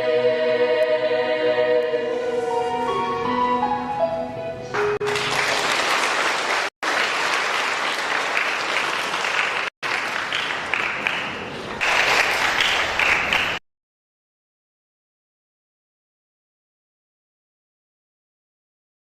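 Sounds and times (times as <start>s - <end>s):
choir singing sustained chord: 0.0s - 4.1s
audience applause: 5.0s - 13.6s.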